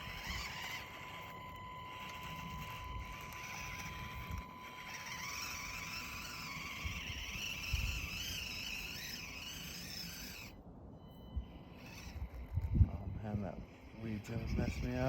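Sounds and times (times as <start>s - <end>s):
small electric motor whining: 0.0s - 15.0s
wind on microphone: 11.3s - 15.0s.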